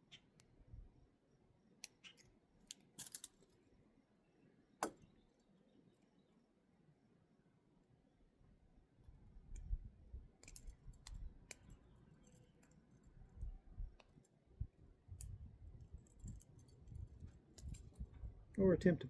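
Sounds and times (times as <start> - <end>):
metallic lock picking clicks: 1.8 - 3.5, 10.4 - 14.3, 15.1 - 18.3.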